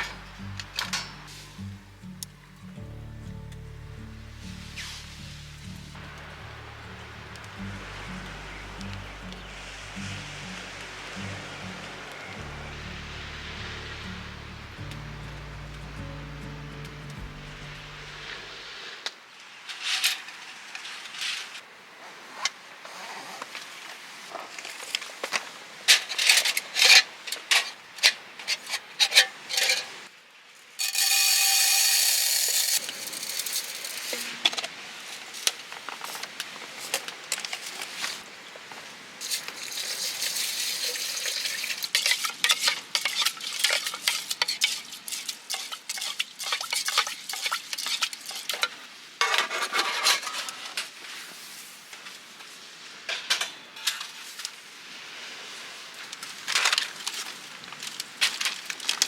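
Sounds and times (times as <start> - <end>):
utensils clinking against dishes: 0.0 - 1.6, 30.8 - 34.6, 39.2 - 50.6
steady rushing sound: 4.3 - 19.0.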